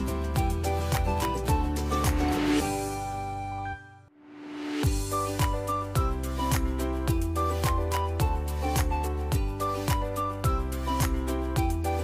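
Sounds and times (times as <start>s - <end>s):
bright melody notes: 4.8s - 12.0s.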